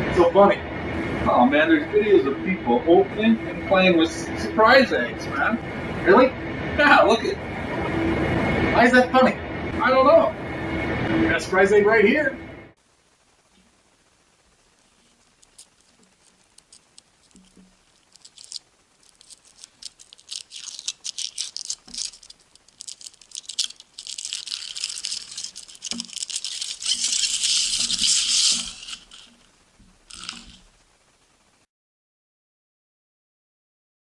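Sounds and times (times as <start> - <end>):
wrapper crinkling and crackling: 13.4 - 31.2.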